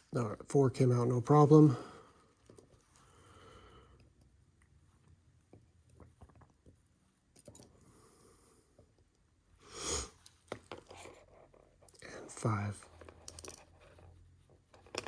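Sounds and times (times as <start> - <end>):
small lock parts clicking: 7.3 - 7.7, 13.1 - 13.7.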